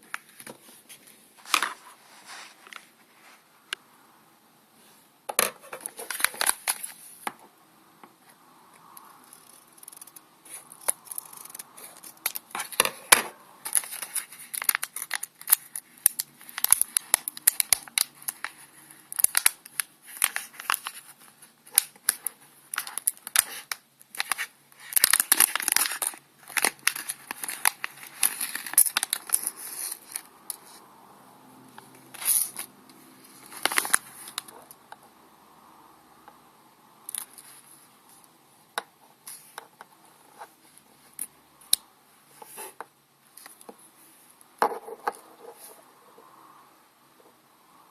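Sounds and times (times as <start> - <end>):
plastic packaging crinkling: 5.4 - 7.1, 9.4 - 30.8, 32.1 - 34.7.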